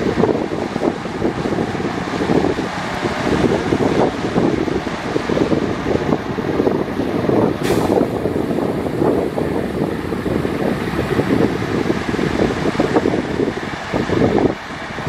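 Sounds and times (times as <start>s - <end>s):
heavy diesel machinery running: 0.0s - 15.0s
short hiss: 7.6s - 8.2s.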